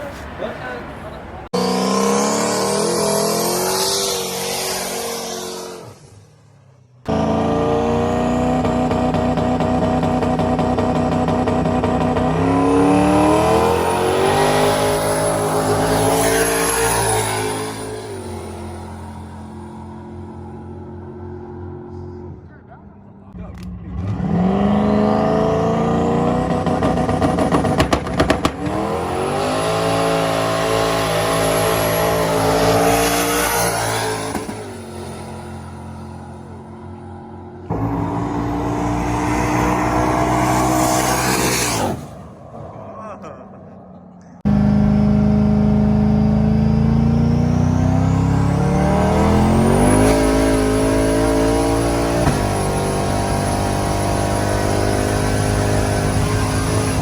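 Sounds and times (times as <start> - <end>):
car engine accelerating: 0.0 - 57.0
exhaust pops: 7.1 - 17.9, 26.2 - 29.5, 49.1 - 57.0.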